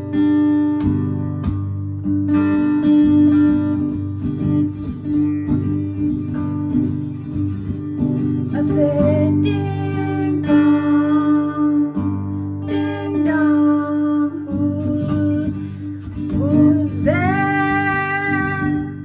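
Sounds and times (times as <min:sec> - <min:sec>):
acoustic guitar strumming: 0:00.0 - 0:19.0
person singing: 0:08.5 - 0:19.0.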